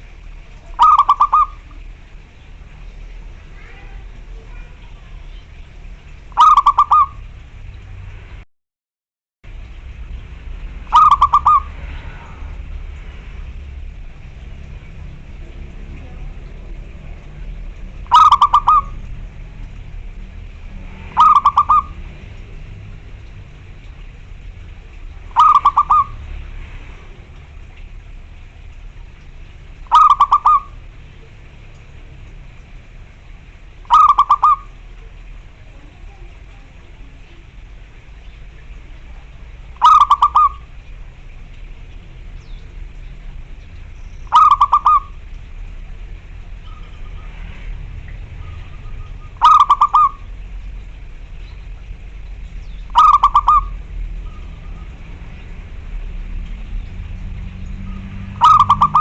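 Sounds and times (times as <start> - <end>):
low steady rumble: 0.0 - 8.4, 9.4 - 59.0
dove cooing: 0.6 - 1.8, 6.3 - 7.2, 10.9 - 12.5, 18.0 - 19.0, 21.1 - 22.0, 25.3 - 26.2, 29.8 - 31.3, 33.8 - 37.4, 39.7 - 40.7, 44.3 - 45.2, 48.4 - 50.2, 52.9 - 54.9, 58.0 - 59.0.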